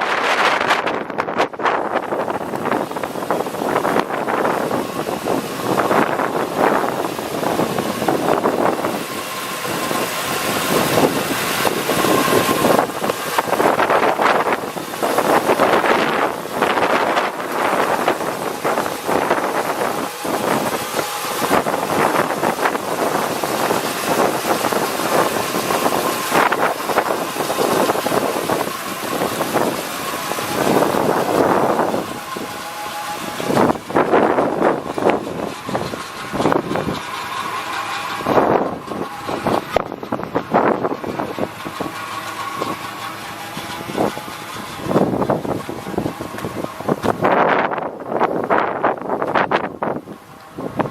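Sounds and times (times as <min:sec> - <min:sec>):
pickup engine idling: 0:00.0 - 0:50.9
wind buffeting microphone: 0:00.0 - 0:50.9.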